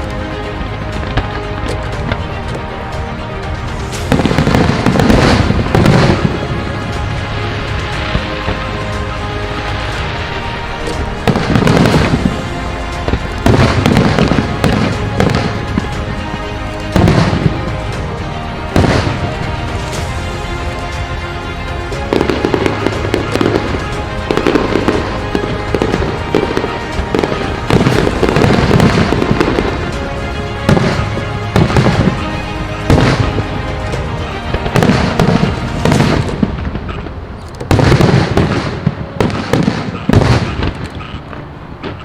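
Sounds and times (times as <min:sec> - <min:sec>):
fireworks bursting: 0:00.0 - 0:42.0
fireworks crackling: 0:00.0 - 0:42.0
music: 0:00.0 - 0:42.0.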